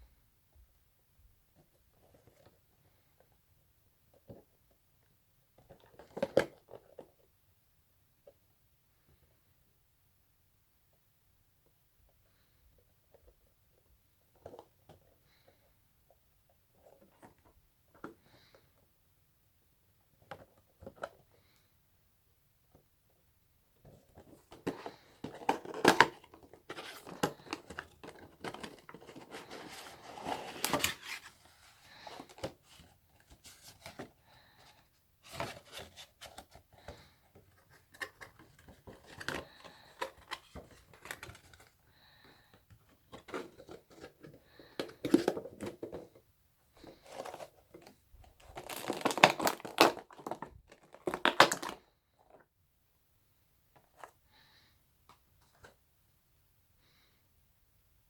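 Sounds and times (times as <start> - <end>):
packaging crinkling and tearing: 24.6 - 31.4, 47.0 - 51.9
packaging clicks: 48.4 - 51.8.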